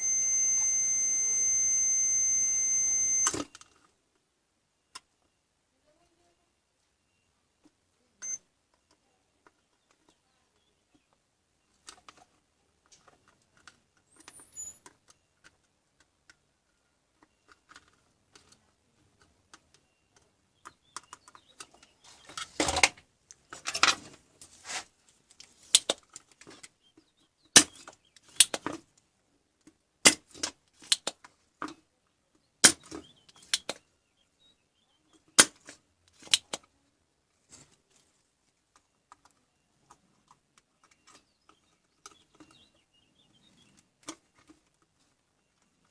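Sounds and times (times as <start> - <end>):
clicks and knocks of hand work: 10.9 - 29.0
loud plastic snaps: 27.5 - 28.8, 30.0 - 31.3, 32.6 - 33.8, 35.4 - 36.7.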